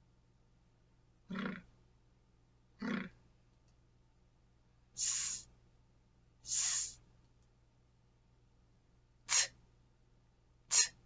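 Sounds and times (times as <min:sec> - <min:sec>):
person making hissing s sounds: 0:05.0 - 0:05.5, 0:06.4 - 0:07.0, 0:09.3 - 0:09.6, 0:10.7 - 0:11.0.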